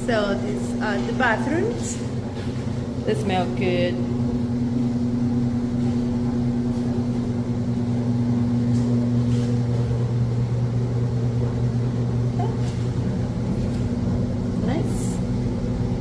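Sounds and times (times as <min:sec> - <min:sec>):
machine electrical hum: 0:00.0 - 0:16.0.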